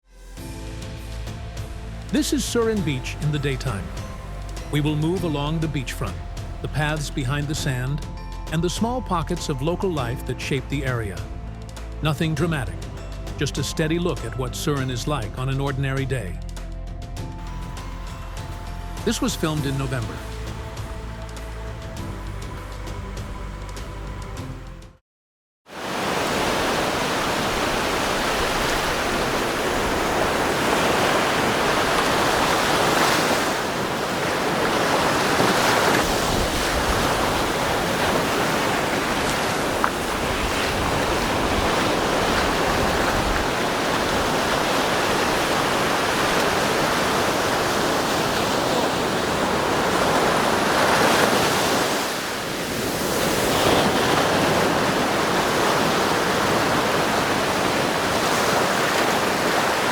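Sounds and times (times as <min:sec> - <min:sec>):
waves breaking on a beach: 0:02.1 - 0:07.8, 0:25.7 - 0:59.9.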